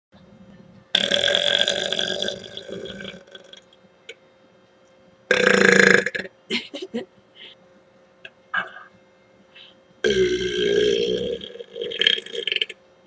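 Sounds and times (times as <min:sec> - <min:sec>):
woman belching: 0:10.1 - 0:12.7.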